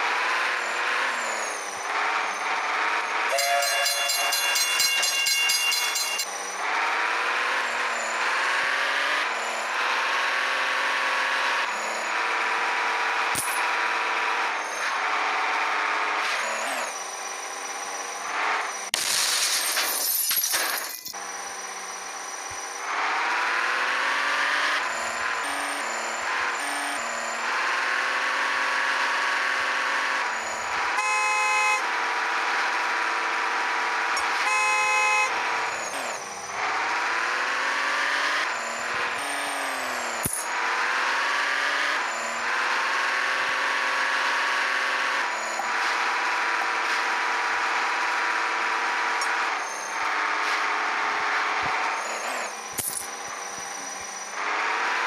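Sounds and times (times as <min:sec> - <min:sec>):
short horn blasts: 0:03.3 - 0:06.3, 0:31.0 - 0:31.9, 0:34.2 - 0:35.4, 0:39.2 - 0:39.8
toy engine revving: 0:19.9 - 0:55.0.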